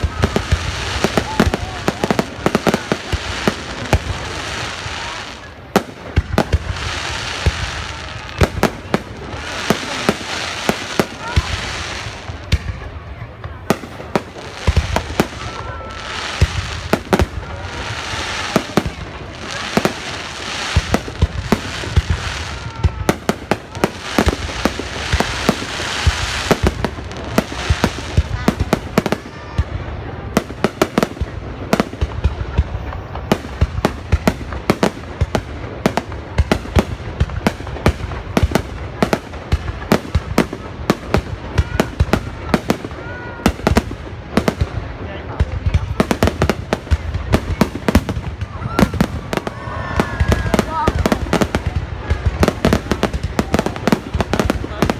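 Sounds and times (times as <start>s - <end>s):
fireworks banging: 0.0s - 54.9s
fireworks crackling: 0.0s - 54.9s
faint firework whistle: 48.4s - 51.4s.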